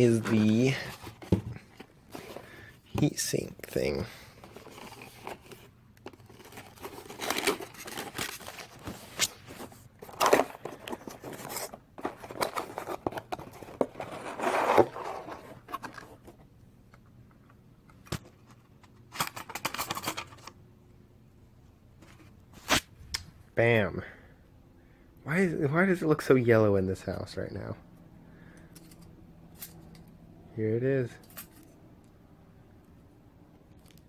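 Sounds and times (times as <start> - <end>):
packaging crinkling and tearing: 4.5 - 16.1.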